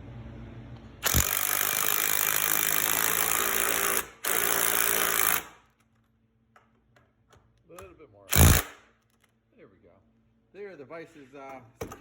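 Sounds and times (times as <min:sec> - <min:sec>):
power tool driving a bolt: 0:01.0 - 0:05.6, 0:08.3 - 0:09.2.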